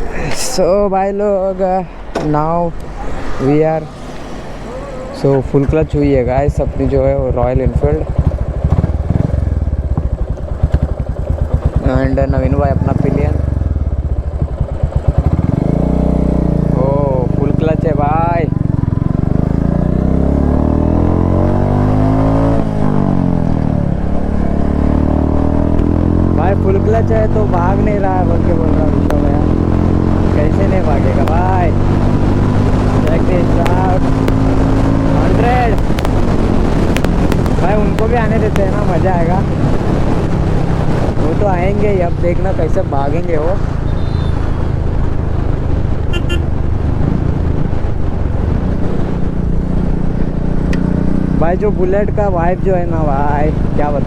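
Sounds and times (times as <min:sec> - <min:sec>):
wind rush: 0:00.0 - 0:09.6, 0:20.8 - 0:51.2
motorcycle engine accelerating: 0:02.0 - 0:54.0
horn toots: 0:43.8 - 0:44.7, 0:46.1 - 0:46.6.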